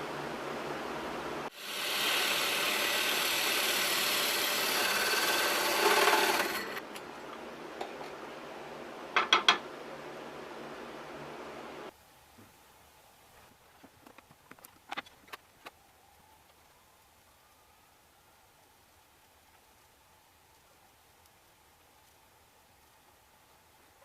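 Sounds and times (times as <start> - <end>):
sanding rasp on wood: 1.5 - 6.8.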